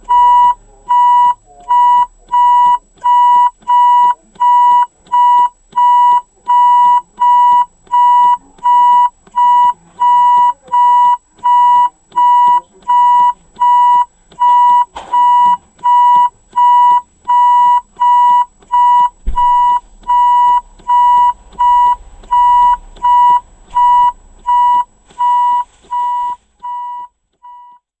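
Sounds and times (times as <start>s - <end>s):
reverse warning beeper: 0.1s - 27.9s
low rumble: 19.1s - 25.1s
low thump: 19.2s - 19.8s.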